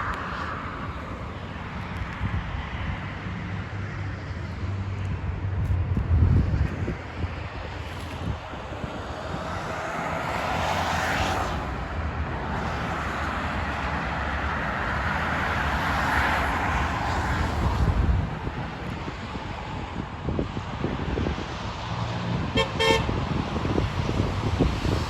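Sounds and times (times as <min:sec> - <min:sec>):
passing vehicle noise: 0:00.0 - 0:25.0
vehicle low rumble: 0:00.0 - 0:25.0.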